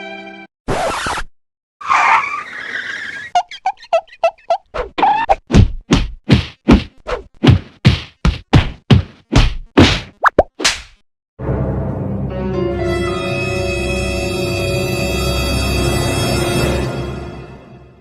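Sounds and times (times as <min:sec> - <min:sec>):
whack sound effects with swoosh: 0:09.0 - 0:11.0.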